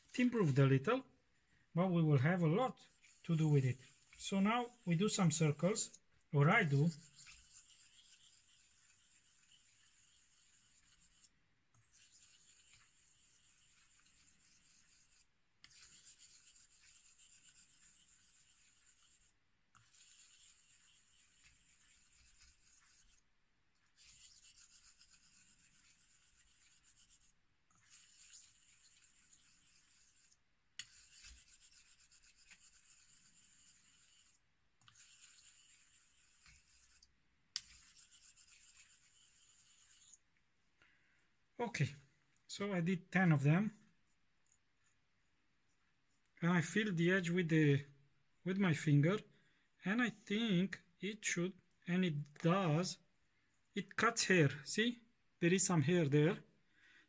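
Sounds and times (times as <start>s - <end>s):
razor scratching on whetstone: 2.2s - 40.2s.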